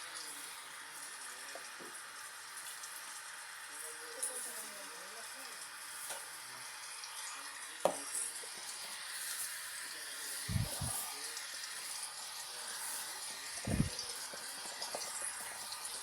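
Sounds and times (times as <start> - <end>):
washing machine hissing: 8.4 - 16.0.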